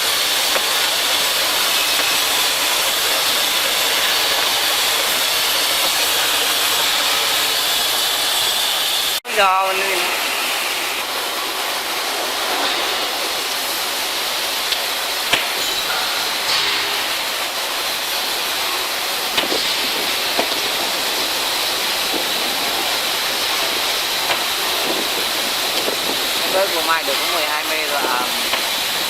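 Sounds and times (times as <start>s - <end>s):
cutting torch flame hissing: 0.0s - 29.0s.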